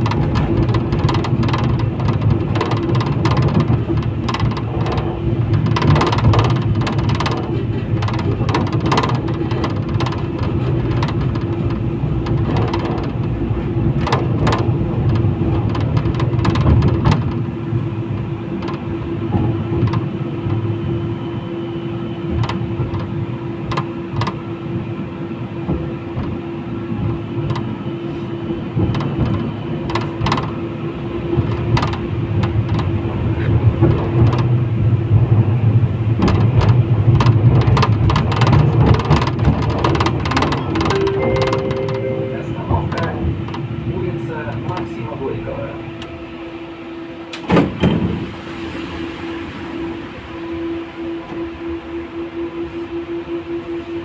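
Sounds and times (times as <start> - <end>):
clacks and rattles: 0.0 - 17.6, 28.8 - 30.6, 31.4 - 34.6
tram wheels rumbling on rails: 0.0 - 54.0.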